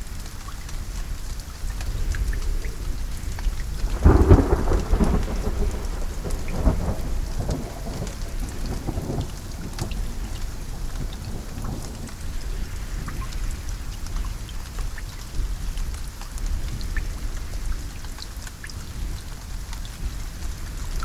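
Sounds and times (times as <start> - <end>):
rain drop ticks: 0.0 - 21.0
steady rain: 0.0 - 21.0
thunder rumbling: 1.8 - 13.8.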